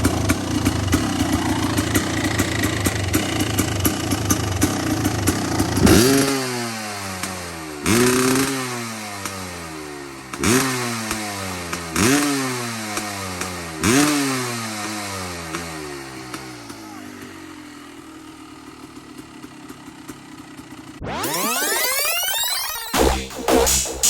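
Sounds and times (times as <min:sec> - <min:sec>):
two-stroke engine idling and revving: 0:00.0 - 0:21.8.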